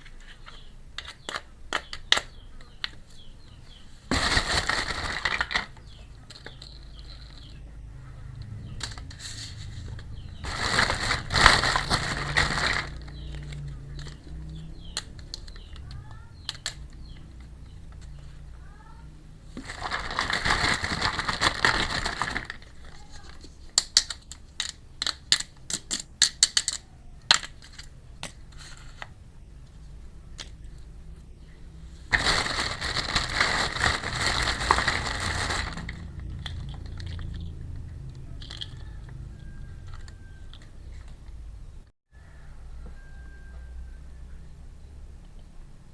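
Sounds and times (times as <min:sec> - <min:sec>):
plastic packaging crinkling: 0:04.1 - 0:07.4, 0:10.0 - 0:14.2, 0:19.6 - 0:23.4, 0:32.1 - 0:37.5
small plastic pieces clicking: 0:14.9 - 0:17.2, 0:23.3 - 0:28.4.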